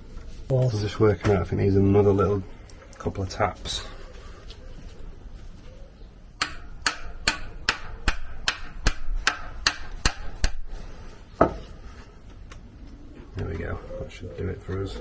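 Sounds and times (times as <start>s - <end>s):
hammer tapping metal: 6.4s - 10.6s.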